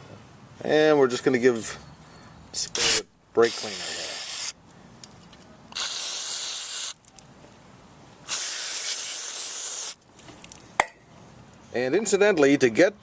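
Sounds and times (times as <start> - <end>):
aerosol can spraying: 2.8 - 4.6, 5.8 - 7.0, 8.3 - 10.0.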